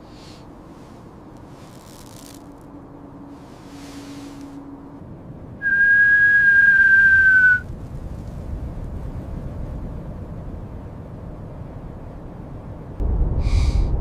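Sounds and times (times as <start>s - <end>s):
loud steady whistle: 5.6s - 7.7s
faint low rumble: 7.1s - 14.0s.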